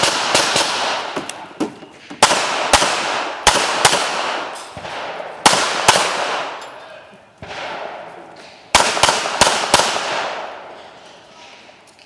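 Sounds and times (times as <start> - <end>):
pistol shots with echo: 0.0 - 1.3, 2.2 - 6.7, 7.4 - 8.1, 8.7 - 10.7.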